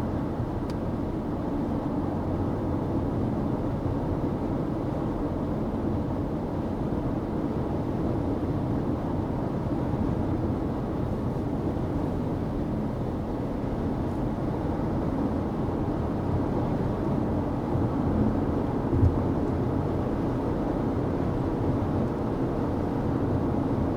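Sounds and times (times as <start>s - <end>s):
vehicle road noise from inside: 8.3s - 23.9s.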